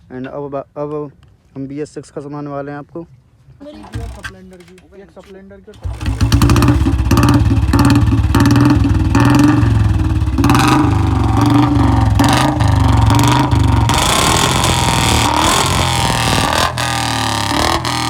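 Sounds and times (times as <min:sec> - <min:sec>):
motorcycle engine revving: 0:05.8 - 0:18.0.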